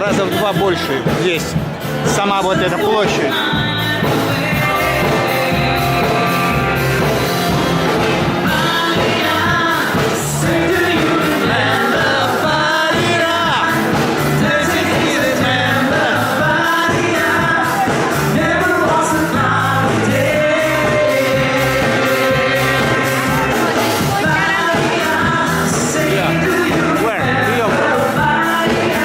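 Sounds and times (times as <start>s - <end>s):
pop-rock music with singing: 0.0s - 29.0s.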